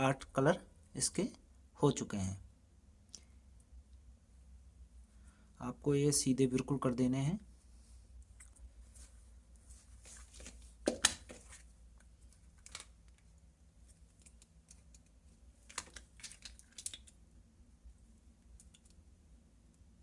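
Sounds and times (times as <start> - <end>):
light clicks and rustles: 8.2 - 17.2
fingers handling thin wires: 10.0 - 17.2.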